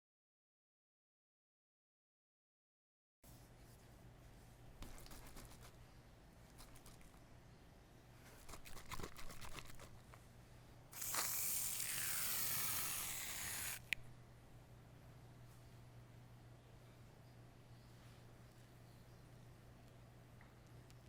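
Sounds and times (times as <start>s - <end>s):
steady hiss: 11.0s - 14.0s.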